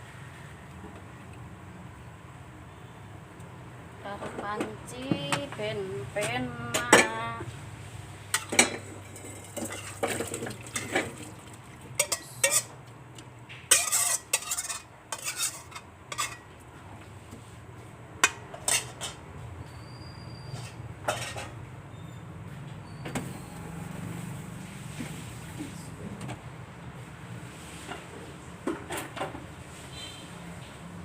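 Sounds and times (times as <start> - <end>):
metal spoon clinking on pot: 12.0 - 12.8, 13.7 - 16.5.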